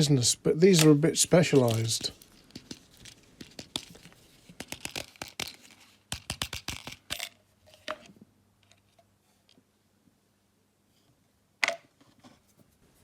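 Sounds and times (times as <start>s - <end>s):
packaging crackling and rustling: 0.8s - 6.0s.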